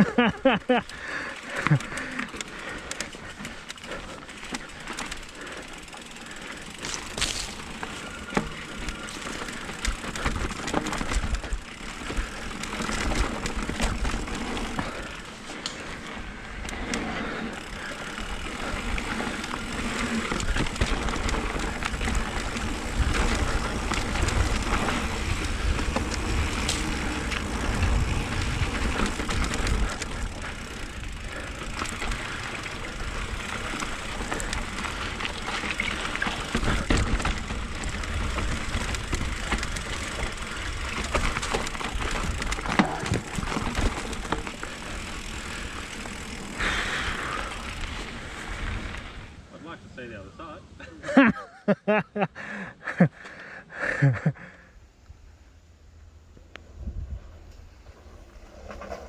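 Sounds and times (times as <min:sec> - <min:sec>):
bike tyres crunching on trail: 0:00.0 - 0:51.0, 0:53.1 - 0:59.0
wind rumbling on microphone: 0:19.8 - 0:30.6, 0:56.4 - 0:59.0.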